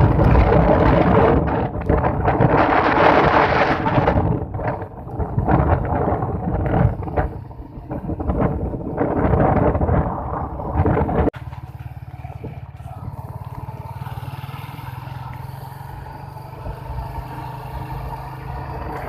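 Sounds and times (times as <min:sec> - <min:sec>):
motorcycle engine running steadily: 0:00.0 - 0:19.0
wind buffeting microphone: 0:00.0 - 0:19.0.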